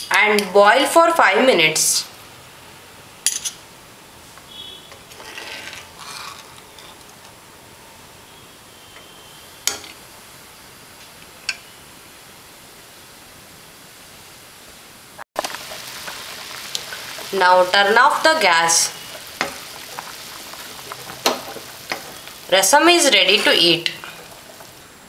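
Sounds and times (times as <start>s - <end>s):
pot boiling on gas stove: 3.9s - 14.3s, 15.4s - 25.0s.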